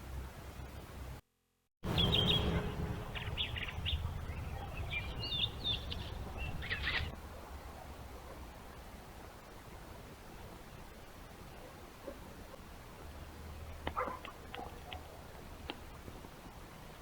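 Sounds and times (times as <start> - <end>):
small birds chirping: 1.9 - 8.6
microphone rumble and hiss: 1.9 - 17.0.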